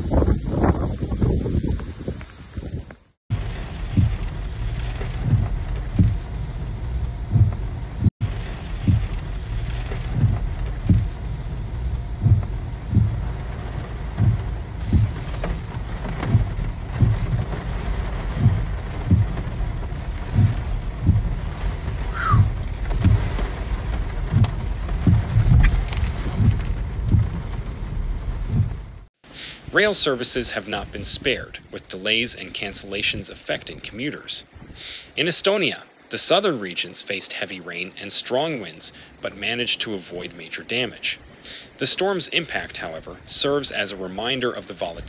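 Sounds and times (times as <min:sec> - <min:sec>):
low thuds: 0:00.0 - 0:29.1
rain: 0:00.0 - 0:45.0.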